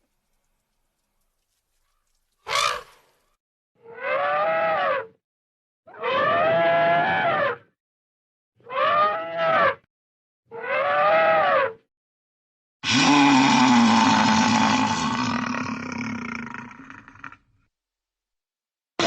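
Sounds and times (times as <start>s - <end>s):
drawn-out rising and falling calls: 1.8s - 3.2s.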